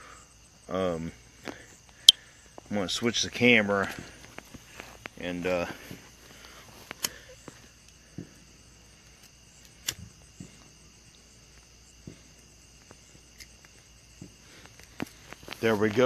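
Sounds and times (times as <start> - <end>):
crickets chirping: 0.0 - 16.0.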